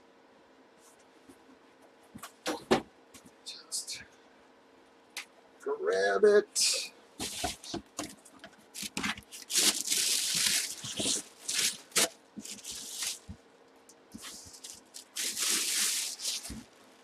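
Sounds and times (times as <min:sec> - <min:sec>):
cardboard box rustling: 0:07.2 - 0:08.2, 0:08.8 - 0:13.4.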